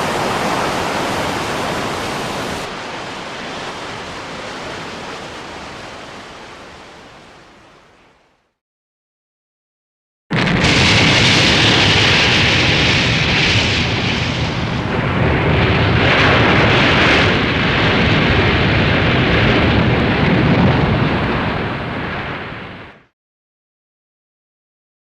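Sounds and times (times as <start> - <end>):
churning water rushing: 0.0 - 8.4.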